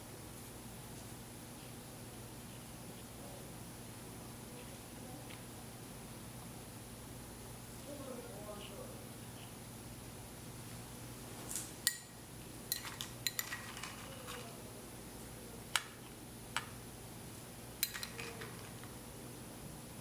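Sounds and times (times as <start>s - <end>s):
metal utensil clinking on dish: 12.7s - 14.4s, 17.8s - 18.7s.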